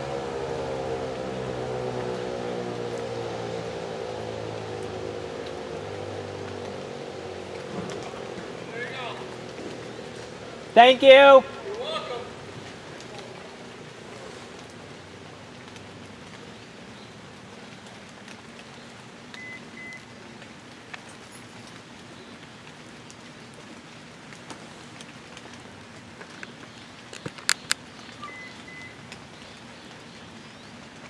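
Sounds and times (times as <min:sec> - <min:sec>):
sharp clicks: 0:27.1 - 0:27.8
short double beeps: 0:28.2 - 0:29.0.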